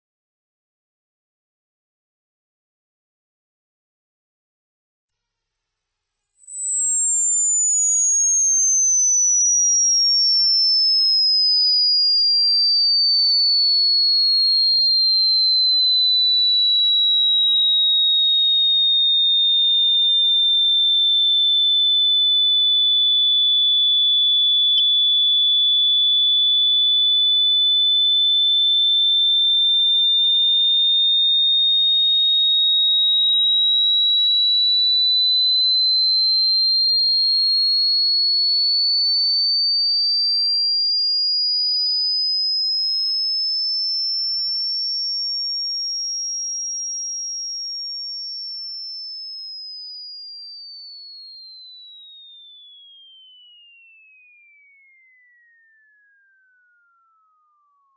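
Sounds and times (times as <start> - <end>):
high electronic sine tone sliding: 5.1 - 11.2.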